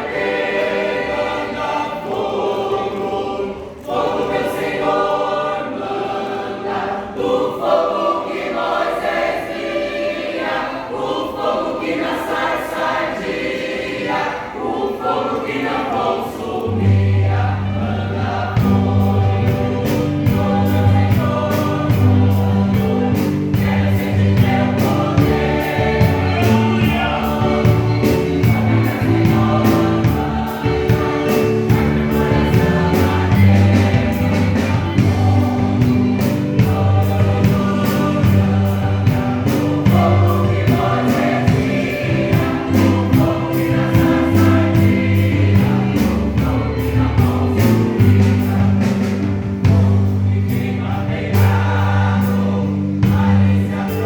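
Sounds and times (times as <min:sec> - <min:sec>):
choir singing gospel: 0:00.0 - 0:54.0
band playing: 0:15.6 - 0:54.0
bass line: 0:17.0 - 0:53.9
drum beat: 0:18.6 - 0:50.2.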